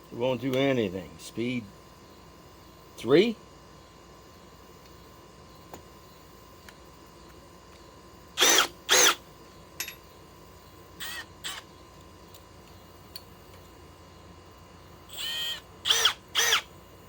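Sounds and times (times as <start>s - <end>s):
cordless drill bursts: 8.4s - 9.2s, 11.0s - 11.6s, 15.1s - 16.7s.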